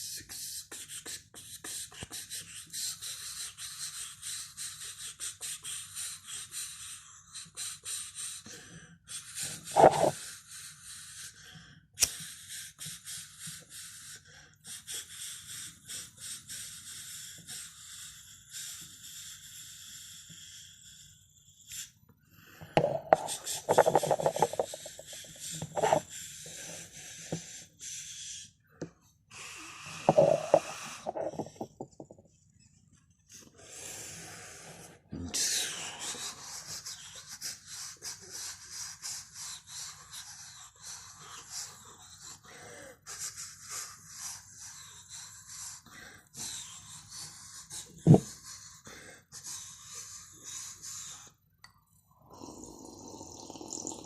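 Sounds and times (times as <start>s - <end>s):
breathy hiss: 0.0s - 31.6s
mouth clicks and pops: 9.7s - 10.1s, 22.8s - 26.0s, 30.0s - 31.7s.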